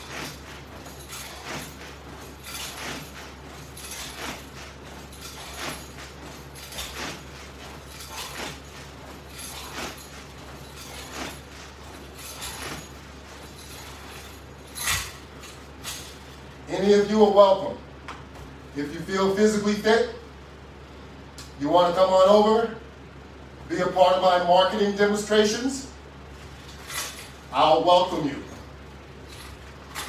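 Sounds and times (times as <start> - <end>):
strap rustling and clinking: 0.0 - 16.6, 26.2 - 27.6, 28.5 - 30.0
steady low hum: 0.0 - 30.0.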